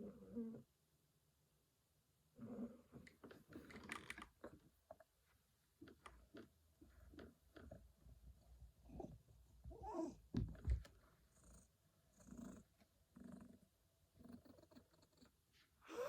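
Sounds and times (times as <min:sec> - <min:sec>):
cat snoring: 0:11.3 - 0:15.3.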